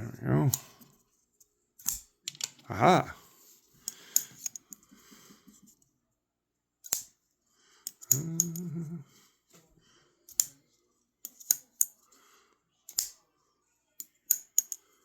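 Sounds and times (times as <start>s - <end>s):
folding knife blade snapping: 1.8s - 2.1s, 6.8s - 7.2s, 7.9s - 8.6s, 12.9s - 13.2s.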